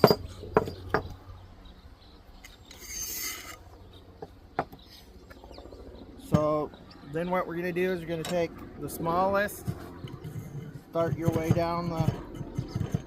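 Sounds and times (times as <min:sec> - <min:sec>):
short scraping rub: 0:02.7 - 0:03.6
sharp knocks and clicks: 0:09.6 - 0:13.0.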